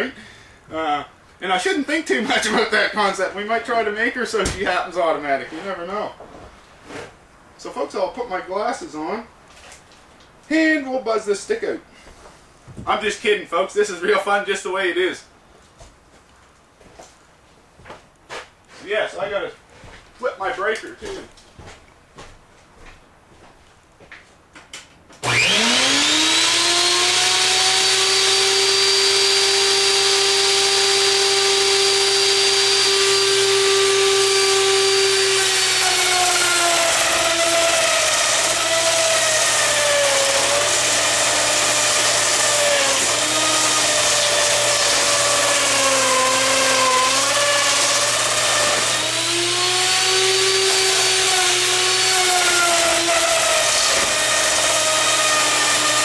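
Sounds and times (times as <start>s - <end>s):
router motor whining: 25.2s - 56.0s.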